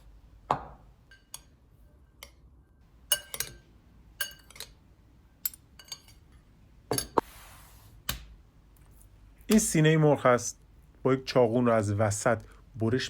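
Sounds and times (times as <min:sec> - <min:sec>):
utensil clinking against a bowl: 0:01.0 - 0:02.4, 0:03.1 - 0:04.8, 0:05.4 - 0:06.3.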